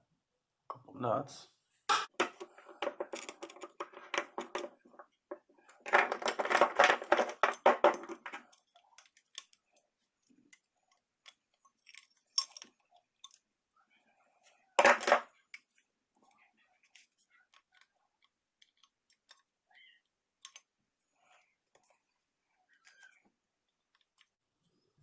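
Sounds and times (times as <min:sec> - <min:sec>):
small screws and nuts clinking: 0:02.2 - 0:13.5.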